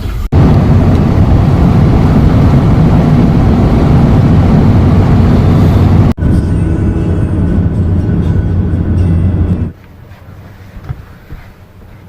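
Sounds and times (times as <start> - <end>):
car road and wind noise: 0.0 - 12.0.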